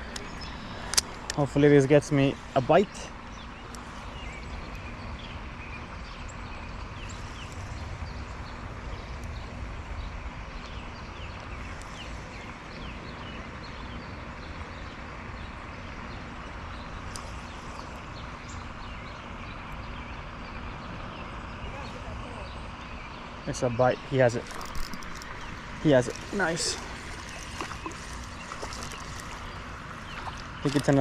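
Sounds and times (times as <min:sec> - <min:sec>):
faint clicks: 0:24.4 - 0:31.0.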